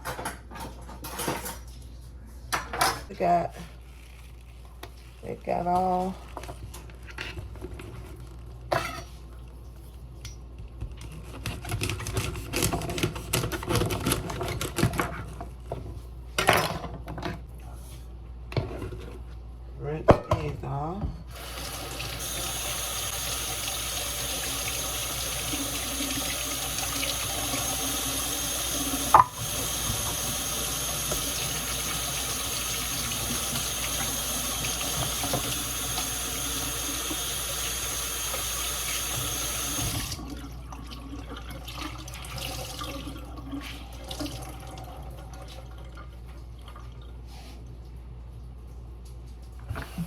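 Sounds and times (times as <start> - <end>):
tap water running into sink: 21.3 - 46.3.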